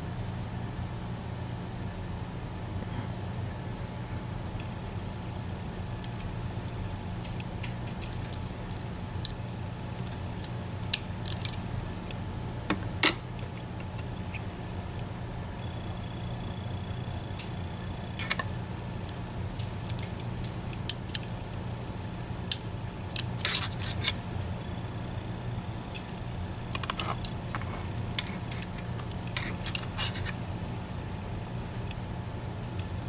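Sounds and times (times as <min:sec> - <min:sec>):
steady low hum: 0:00.0 - 0:33.0
lock pick clicking and scraping: 0:06.0 - 0:11.7, 0:18.1 - 0:21.4, 0:22.4 - 0:24.2, 0:25.9 - 0:30.4.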